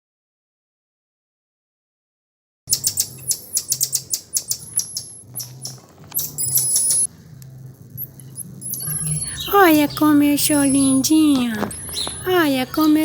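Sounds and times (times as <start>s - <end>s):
birds chirping: 2.7s - 7.1s, 8.0s - 13.0s.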